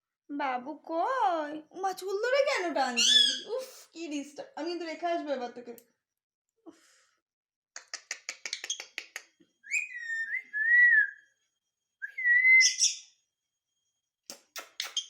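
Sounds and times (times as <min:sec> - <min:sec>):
parrot clicking chatter: 0:07.8 - 0:09.2, 0:14.4 - 0:15.0
parrot whistling: 0:09.7 - 0:11.2, 0:12.0 - 0:13.0.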